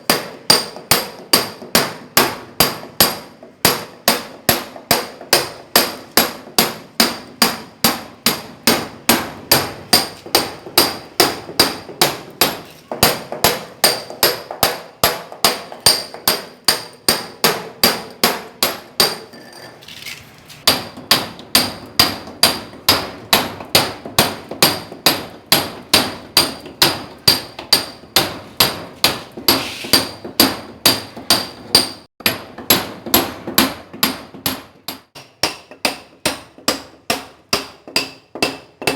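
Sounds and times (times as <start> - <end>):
sledgehammer striking steel chisel: 0.0 - 19.5, 20.6 - 38.9.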